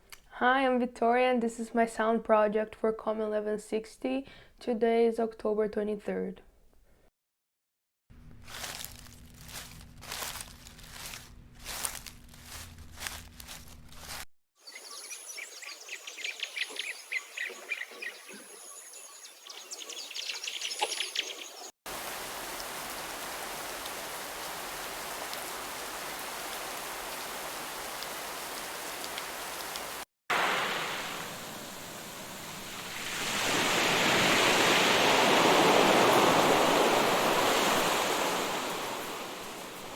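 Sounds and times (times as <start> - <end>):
footsteps: 8.4 - 14.3
birds chirping: 14.6 - 21.8
running water rushing: 14.7 - 39.9.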